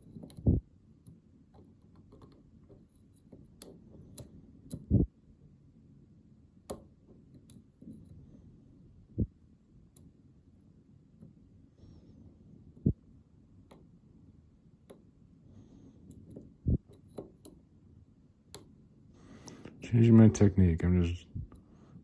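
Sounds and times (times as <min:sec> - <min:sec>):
lock pick clicking and scraping: 0:00.0 - 0:00.5, 0:01.6 - 0:04.9, 0:16.1 - 0:17.6.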